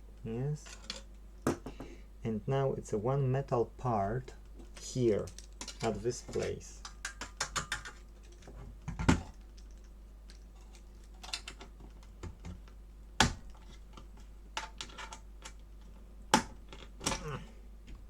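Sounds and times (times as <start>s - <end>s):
clicks and taps of parts: 4.6s - 17.3s.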